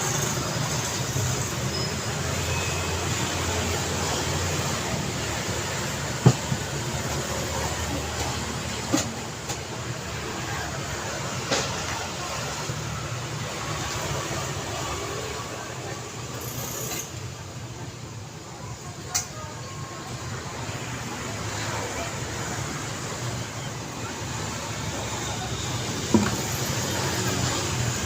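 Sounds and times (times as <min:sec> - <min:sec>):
passing vehicles: 0:20.0 - 0:28.0.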